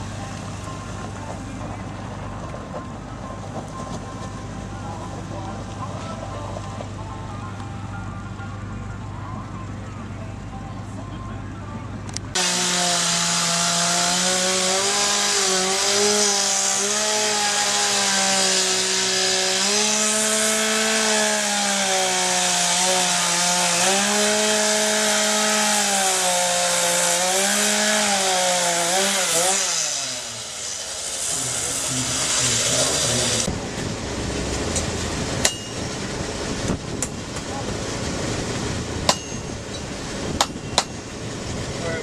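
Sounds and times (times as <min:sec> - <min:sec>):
chainsaw cutting wood: 0:12.3 - 0:33.6, 0:34.5 - 0:37.2, 0:39.0 - 0:41.2.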